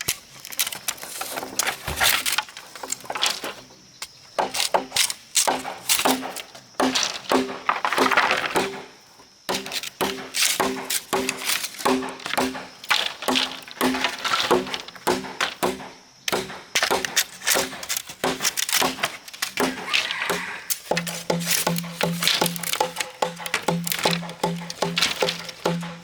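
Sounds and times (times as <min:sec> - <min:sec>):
percussive clicks: 0:09.5 - 0:26.0.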